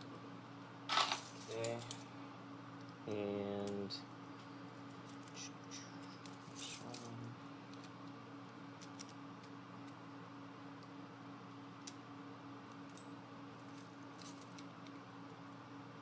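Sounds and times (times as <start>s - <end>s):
padlock and keys jingling: 4.9s - 7.2s.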